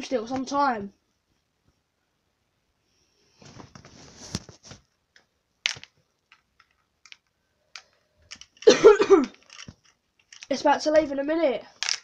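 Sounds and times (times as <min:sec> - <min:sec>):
soft handling rustle: 0:03.3 - 0:05.2.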